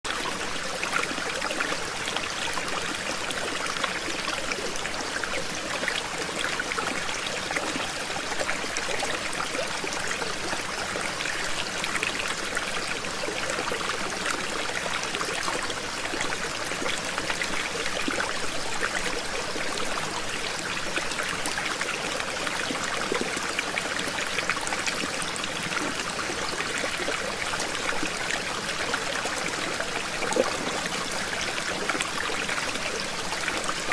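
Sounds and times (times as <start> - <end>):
small waterfall splashing: 0.0 - 33.9.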